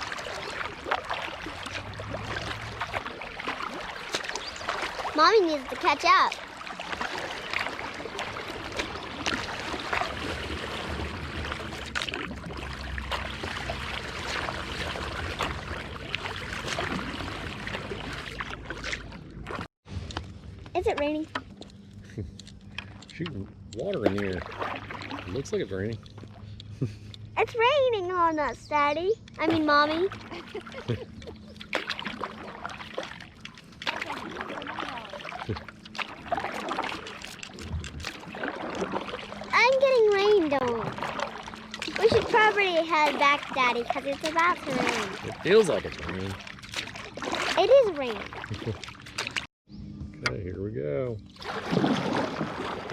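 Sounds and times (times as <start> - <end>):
paddle splashes and drips: 0.0 - 20.3, 22.7 - 27.3, 29.2 - 49.5, 51.3 - 52.9
steady low rumble: 37.5 - 38.3.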